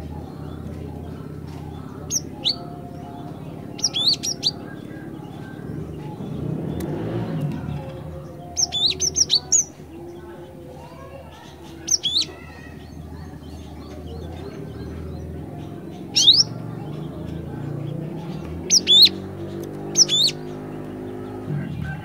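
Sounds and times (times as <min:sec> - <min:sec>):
bird chirping high and sharp: 0:03.8 - 0:04.6, 0:08.6 - 0:09.7, 0:11.9 - 0:12.5, 0:16.1 - 0:16.5, 0:18.7 - 0:19.2, 0:19.9 - 0:20.5.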